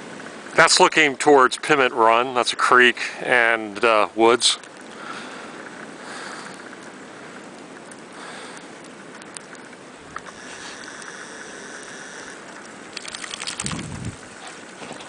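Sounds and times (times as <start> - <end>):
crackling clicks: 3.7 - 15.0
blizzard wind hissing: 4.9 - 13.0, 13.6 - 14.8.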